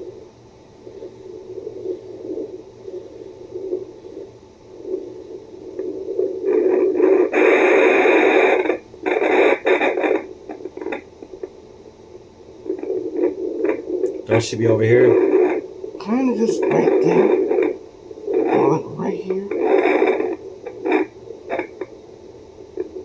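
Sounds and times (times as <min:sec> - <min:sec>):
doppler speaker rumbling static: 0:00.8 - 0:07.4, 0:12.1 - 0:19.6.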